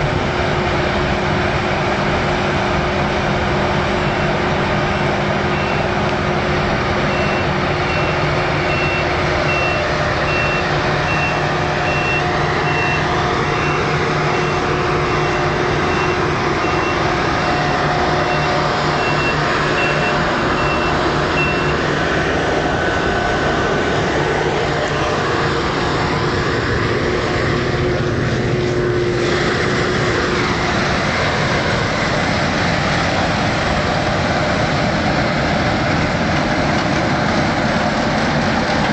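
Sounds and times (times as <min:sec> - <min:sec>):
combine harvester running: 0:00.0 - 0:38.9
reversing alarm beeping: 0:05.3 - 0:06.1, 0:06.9 - 0:21.9.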